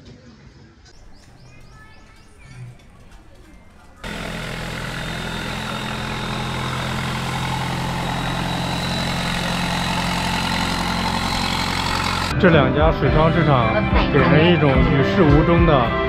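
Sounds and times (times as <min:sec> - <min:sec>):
engine running with loud hiss: 0:01.0 - 0:12.3.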